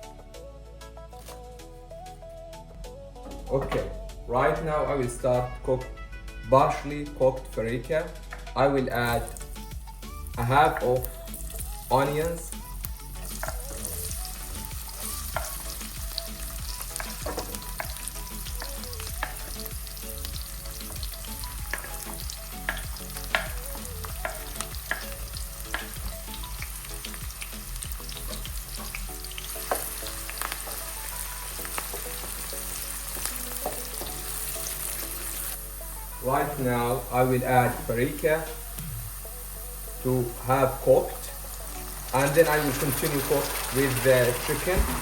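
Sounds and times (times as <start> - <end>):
onions sizzling in a pan: 9.0 - 45.0.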